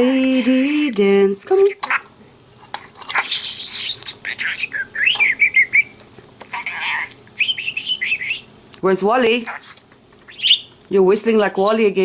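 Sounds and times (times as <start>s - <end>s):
budgerigar chattering and whistling: 3.2s - 8.5s, 9.5s - 10.7s.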